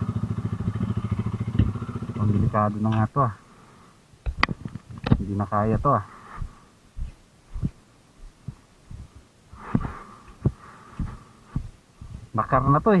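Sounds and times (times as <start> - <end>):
low thumps: 0.9 - 3.0, 4.2 - 12.4
person breathing: 3.4 - 4.0, 6.0 - 6.8, 8.9 - 12.2.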